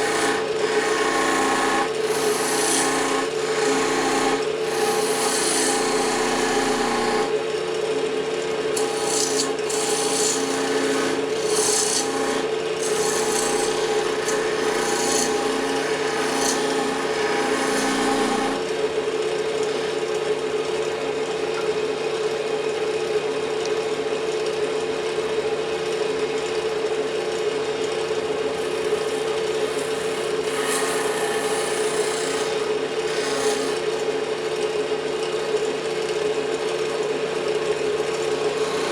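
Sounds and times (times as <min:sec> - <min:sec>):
lathe motor hum: 0:00.0 - 0:07.4, 0:08.4 - 0:21.3, 0:28.5 - 0:35.6, 0:36.4 - 0:38.9
tool scraping spinning wood: 0:00.0 - 0:07.4, 0:08.6 - 0:20.7, 0:28.5 - 0:34.6, 0:36.4 - 0:38.9.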